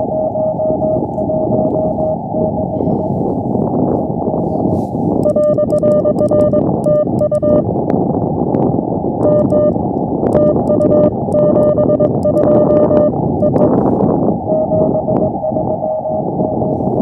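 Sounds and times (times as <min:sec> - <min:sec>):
morse code tone: 0:00.0 - 0:03.5, 0:05.2 - 0:07.7, 0:09.2 - 0:17.0
sharp keying clicks: 0:05.2 - 0:07.5, 0:09.2 - 0:13.7.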